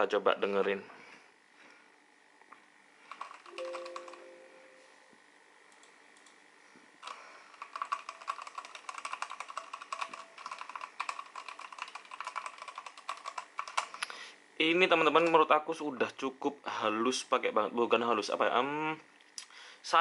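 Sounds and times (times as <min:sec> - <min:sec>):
mechanical keyboard typing: 0:03.1 - 0:04.4, 0:07.0 - 0:14.0.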